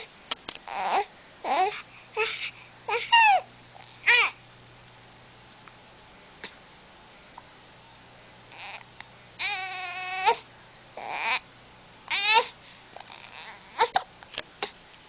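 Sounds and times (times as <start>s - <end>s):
baby crying and squealing: 0.7s - 4.4s, 9.4s - 10.4s, 12.1s - 12.5s, 13.1s - 14.0s.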